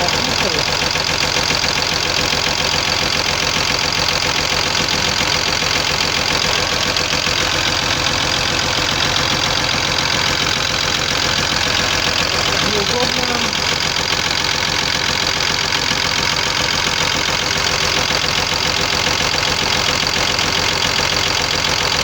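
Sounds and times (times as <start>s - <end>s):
diesel engine idling with knock: 0.0s - 22.0s.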